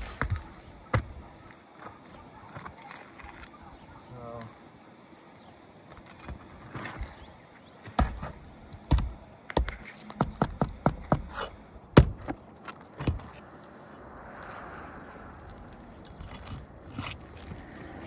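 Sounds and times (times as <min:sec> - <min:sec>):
pry bar knocking on shingles: 0:07.8 - 0:11.4, 0:12.0 - 0:12.4.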